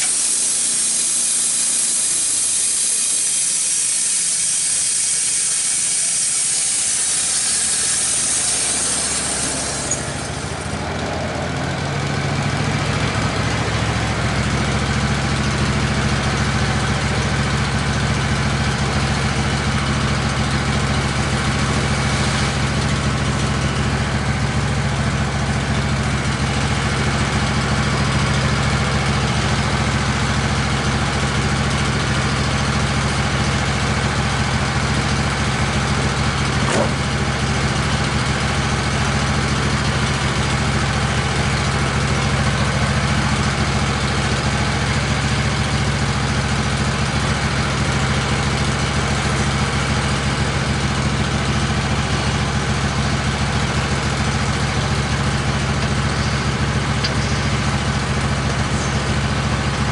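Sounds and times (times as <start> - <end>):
high hiss: 0.0 - 10.8
sawmill engine hum: 0.0 - 59.9.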